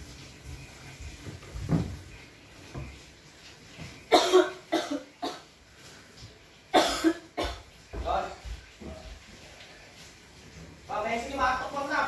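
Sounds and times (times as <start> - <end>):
person coughing: 4.1 - 5.5, 6.7 - 7.7.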